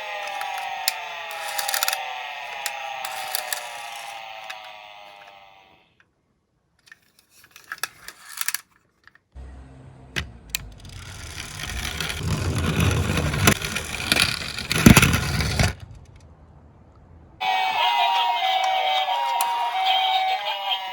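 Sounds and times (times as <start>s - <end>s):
toy car rolling down slope: 0.0s - 5.7s, 6.8s - 9.2s, 10.5s - 16.2s.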